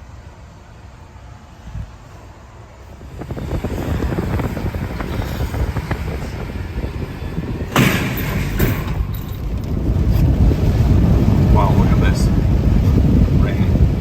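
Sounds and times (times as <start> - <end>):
wind buffeting microphone: 1.6 - 14.0
sharp bang: 7.7 - 9.2
heavy rainstorm: 9.5 - 14.0.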